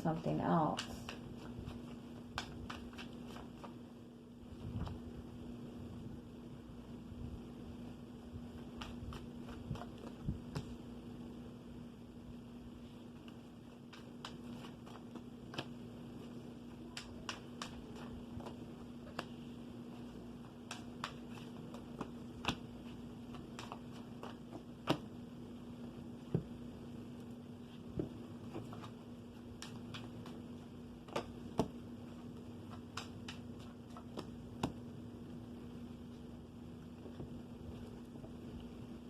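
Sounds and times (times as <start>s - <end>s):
steady low hum: 0.0s - 39.0s
cards clicking and tapping: 0.6s - 3.8s, 8.6s - 10.8s, 13.2s - 25.1s, 27.8s - 34.9s.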